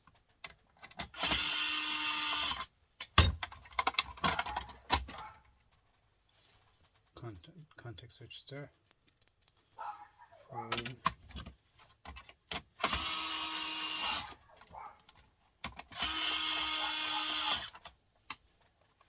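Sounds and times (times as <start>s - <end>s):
parts clicking and knocking: 0.0s - 7.8s, 8.7s - 9.9s, 10.7s - 19.0s
power drill whine: 1.2s - 2.7s, 12.8s - 14.4s, 16.0s - 17.8s.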